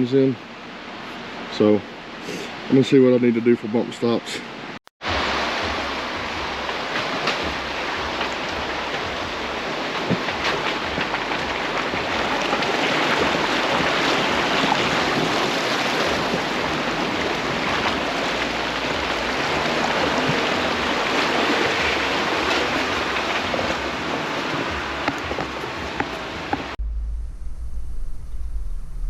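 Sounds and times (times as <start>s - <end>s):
low engine: 16.0s - 29.0s.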